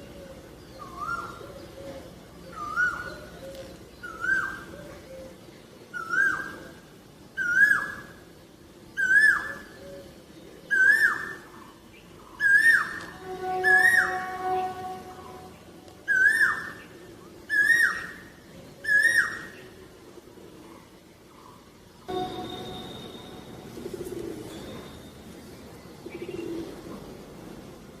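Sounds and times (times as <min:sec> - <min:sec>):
koel two-note call: 0:13.1 - 0:15.7, 0:22.1 - 0:25.1.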